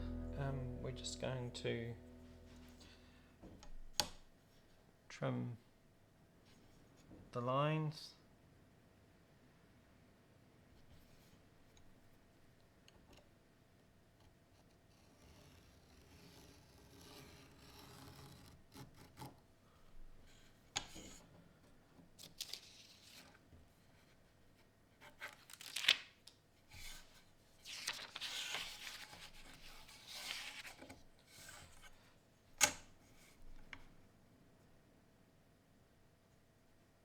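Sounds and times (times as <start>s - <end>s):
paper rustling: 27.6s - 30.8s.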